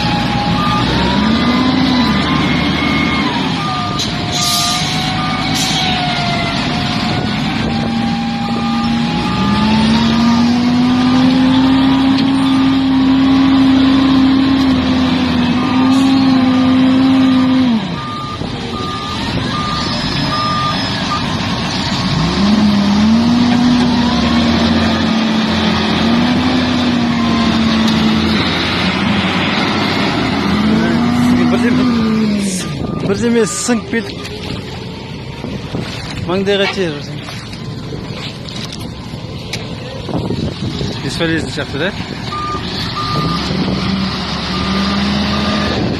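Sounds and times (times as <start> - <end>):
reversing alarm beeping: 0.0 - 10.4, 17.9 - 21.3, 30.9 - 34.4, 42.3 - 43.5
diesel engine revving: 0.0 - 45.9.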